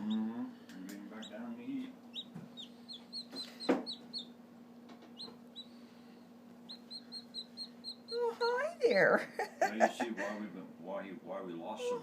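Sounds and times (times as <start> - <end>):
chick peeping: 1.1 - 4.4, 5.0 - 5.8, 6.6 - 8.6.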